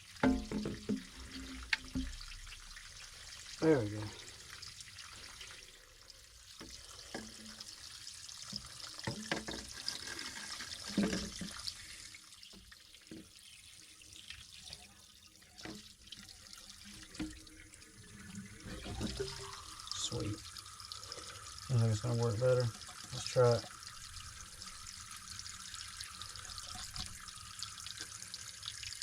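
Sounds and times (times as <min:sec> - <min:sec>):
water running from a pipe: 0:00.0 - 0:29.0
pipe fittings knocking: 0:00.2 - 0:02.3, 0:18.5 - 0:20.1.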